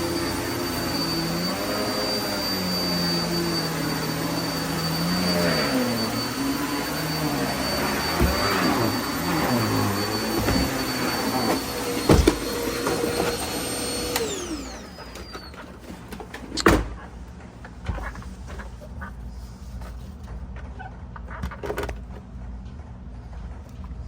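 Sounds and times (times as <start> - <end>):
vacuum cleaner whining: 0.0 - 16.6.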